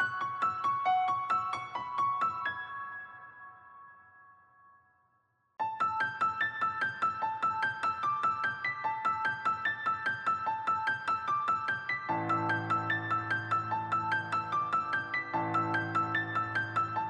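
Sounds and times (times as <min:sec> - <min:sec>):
piano music: 0:05.6 - 0:17.0.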